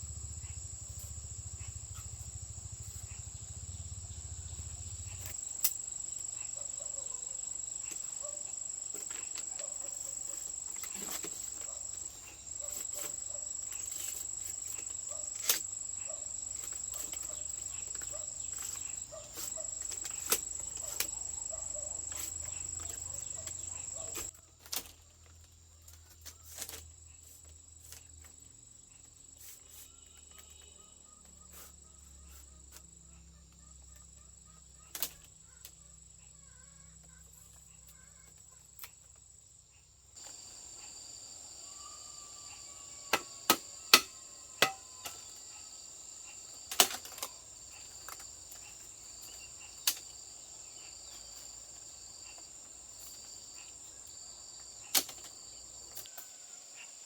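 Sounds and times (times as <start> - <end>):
high-pitched insect drone: 0.0 - 24.3.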